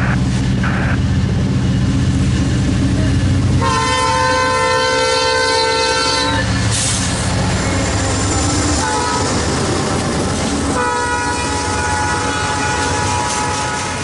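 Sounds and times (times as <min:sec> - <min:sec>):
train rumbling: 0:00.0 - 0:14.0
train horn chord blast: 0:03.6 - 0:06.6, 0:08.8 - 0:09.4, 0:10.7 - 0:14.0.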